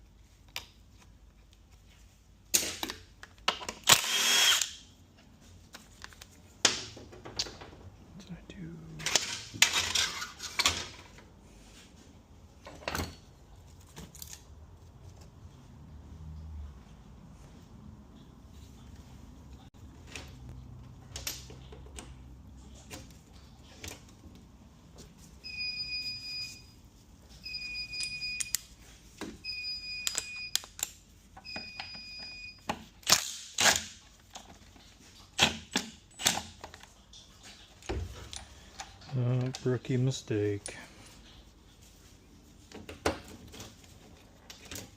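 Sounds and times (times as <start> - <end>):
metal tools clinking: 9.1 - 11.0.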